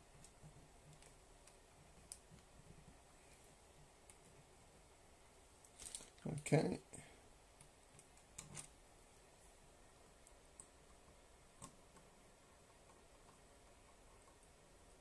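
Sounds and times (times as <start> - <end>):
faint plastic clicks: 0.1 - 3.4.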